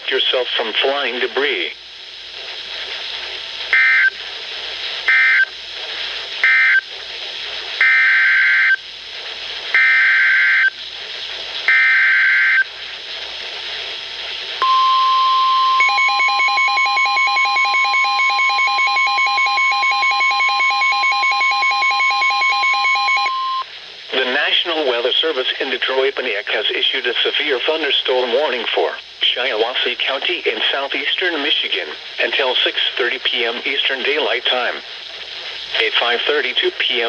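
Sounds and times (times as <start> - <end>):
radio hiss: 0.0 - 15.9, 23.1 - 37.0
steady alarm tone: 14.6 - 23.6.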